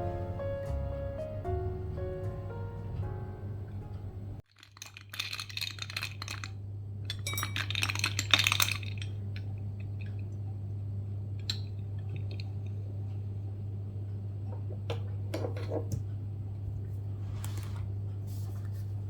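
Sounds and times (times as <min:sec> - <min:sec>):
piano music: 0:00.0 - 0:04.4
steady low hum: 0:00.0 - 0:04.4
light clinking: 0:07.1 - 0:10.3.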